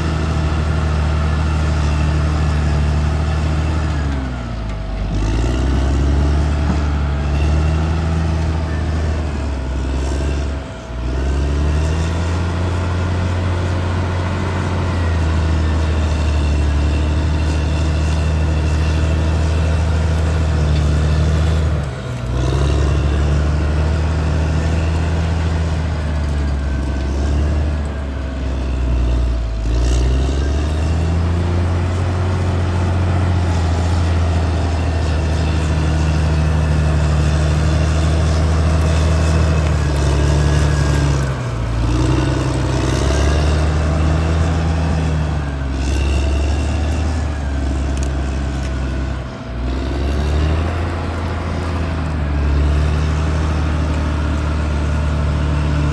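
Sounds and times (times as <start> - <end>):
bulldozer diesel engine running: 0.0 - 55.9.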